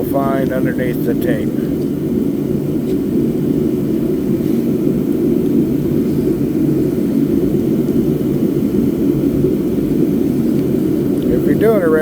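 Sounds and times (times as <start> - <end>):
low rumbling background noise: 0.0 - 12.0.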